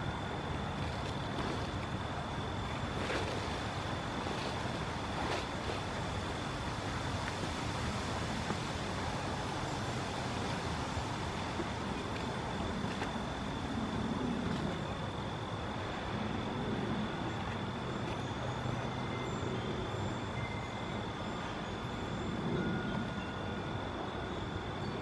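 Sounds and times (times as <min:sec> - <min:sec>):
thin steady high tone: 0:14.8 - 0:25.0.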